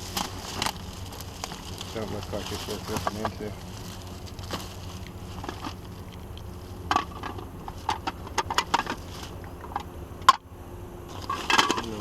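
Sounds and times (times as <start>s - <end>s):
plastic and metal junk clattering: 0.0s - 3.8s, 6.9s - 9.3s, 11.1s - 12.0s.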